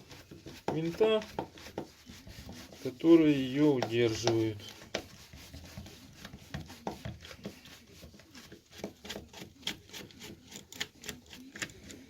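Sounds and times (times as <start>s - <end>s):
screwdriver clicking and scraping: 8.4s - 12.0s.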